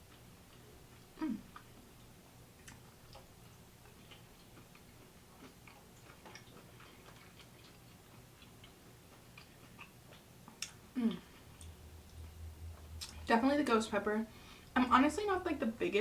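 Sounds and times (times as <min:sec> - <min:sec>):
person chewing wetly: 0:00.0 - 0:13.3.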